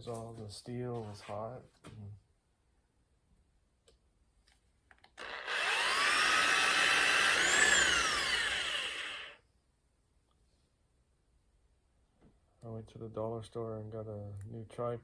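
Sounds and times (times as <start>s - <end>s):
power tool motor whining: 5.2s - 9.4s.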